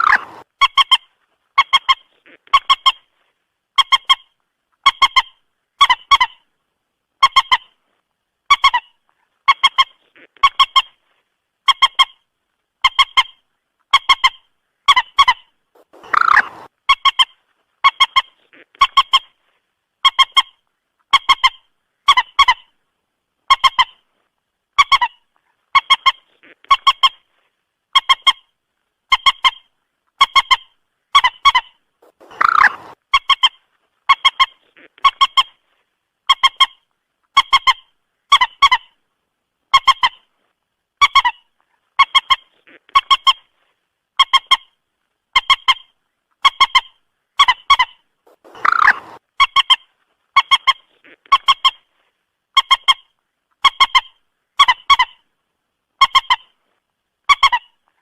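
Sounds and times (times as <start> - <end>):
moorhen calling: 0.0 - 3.1, 12.8 - 19.4, 29.1 - 35.7, 45.4 - 49.8.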